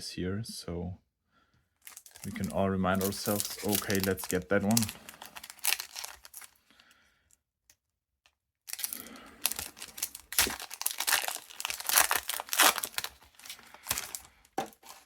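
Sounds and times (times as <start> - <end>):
foil wrapper crinkling and tearing: 1.8 - 6.9, 8.7 - 15.0
cards being shuffled: 2.0 - 4.9.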